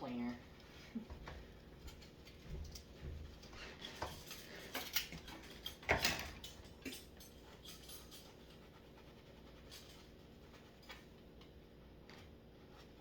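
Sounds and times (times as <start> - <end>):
dishes and cutlery clattering: 3.6 - 8.4.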